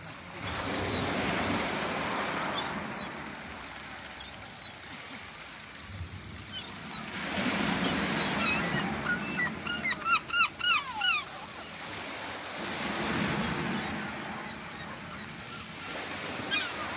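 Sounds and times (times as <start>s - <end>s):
waves washing on shore: 0.0s - 16.9s
gulls calling: 6.5s - 12.0s, 13.1s - 16.9s.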